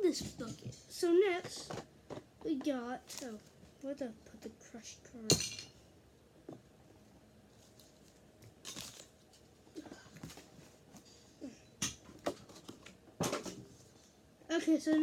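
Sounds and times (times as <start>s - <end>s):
toy packaging rustling: 3.0s - 3.5s.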